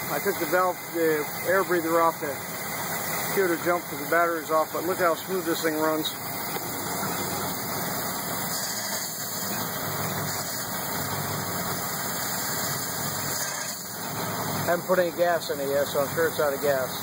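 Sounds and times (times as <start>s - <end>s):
boat engine idling: 0.0s - 8.5s.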